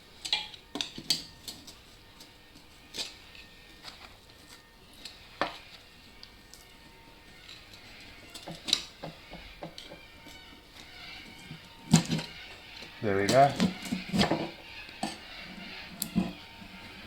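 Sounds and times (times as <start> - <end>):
metal tool clinking and scraping: 13.1 - 16.4.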